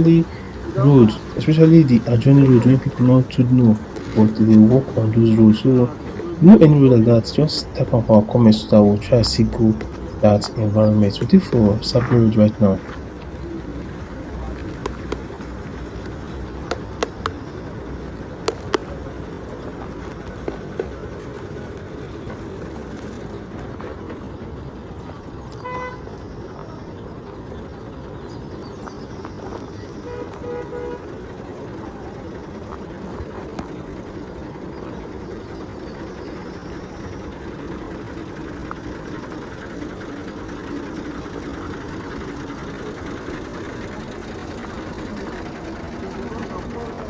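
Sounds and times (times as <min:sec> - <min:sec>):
road traffic noise: 0:00.0 - 0:47.0
vehicle horn toot: 0:25.6 - 0:26.2, 0:30.0 - 0:31.2.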